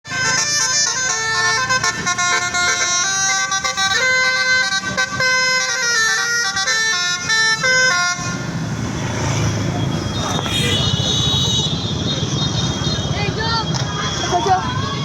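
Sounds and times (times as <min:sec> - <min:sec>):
multi-tone bus horn melody: 0:00.1 - 0:08.7, 0:10.1 - 0:13.1.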